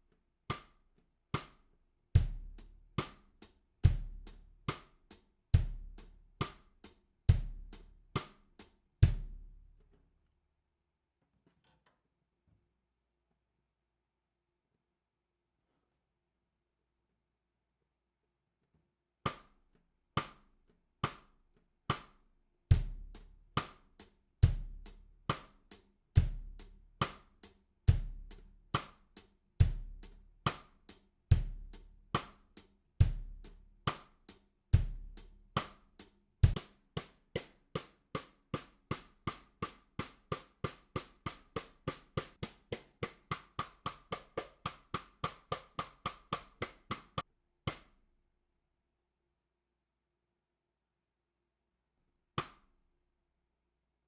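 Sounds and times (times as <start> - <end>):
bass drum beats: 3.8 - 4.4, 33.0 - 33.5.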